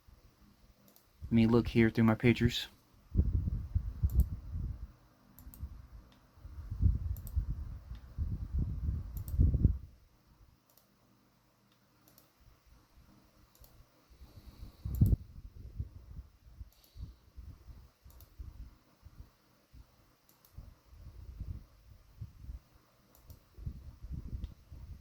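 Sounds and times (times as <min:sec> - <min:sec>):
faint single clicks: 0:04.0 - 0:04.3.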